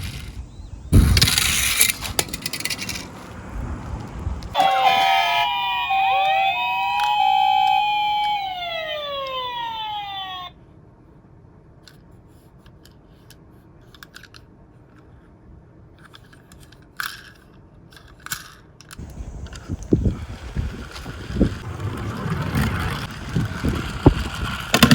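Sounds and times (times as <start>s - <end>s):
police sirens wailing: 4.6s - 10.5s
two-tone ambulance siren: 4.6s - 10.6s.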